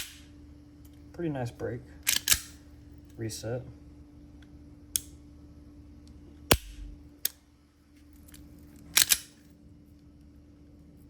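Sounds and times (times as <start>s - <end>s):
pistol dry-fire clicks: 0.0s - 0.2s, 2.1s - 2.6s, 5.0s - 5.2s, 6.5s - 7.4s, 9.0s - 9.3s.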